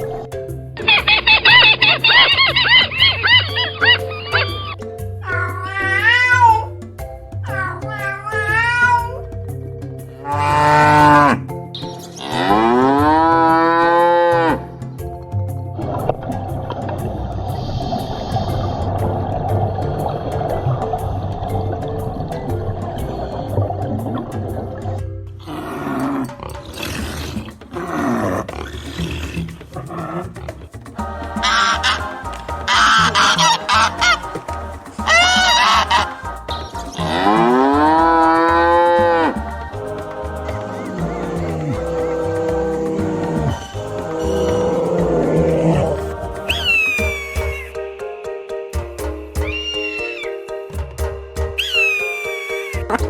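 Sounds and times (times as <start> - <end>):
background music with steady beat: 0.0 - 53.0
higher clearer animal call: 0.8 - 6.7, 25.8 - 39.5, 40.6 - 47.8, 49.4 - 50.5, 51.6 - 53.0
animal roars or growls: 10.2 - 11.4, 12.2 - 14.6, 25.4 - 30.7, 37.0 - 39.5, 40.6 - 46.2
cow mooing: 10.2 - 11.4, 12.2 - 14.7, 37.0 - 39.4.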